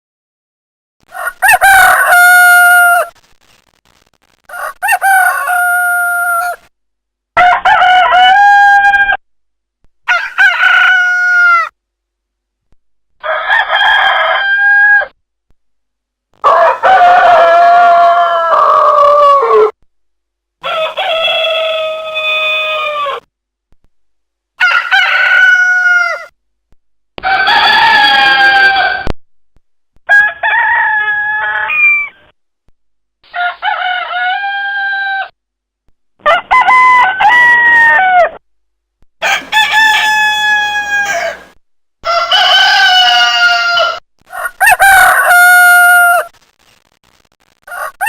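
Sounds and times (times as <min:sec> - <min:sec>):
rooster crowing: 0:01.1 - 0:03.1, 0:04.5 - 0:06.6, 0:07.4 - 0:09.2, 0:10.1 - 0:11.7, 0:13.2 - 0:15.1, 0:16.4 - 0:19.7, 0:20.6 - 0:23.3, 0:24.6 - 0:26.3, 0:27.2 - 0:29.1, 0:33.3 - 0:35.3, 0:36.3 - 0:38.4, 0:39.2 - 0:46.3, 0:47.7 - 0:48.0.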